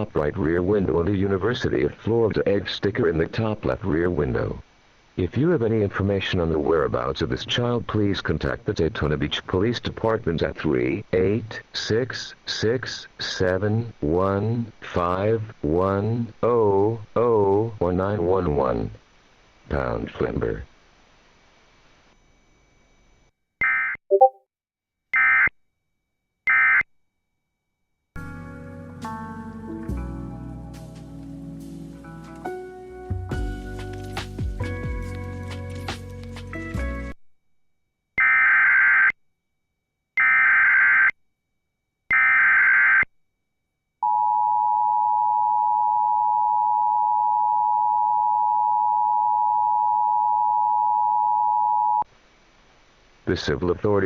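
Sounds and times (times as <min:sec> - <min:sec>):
two-tone attention signal: 0:24.1 - 0:24.4
music: 0:28.2 - 0:37.2.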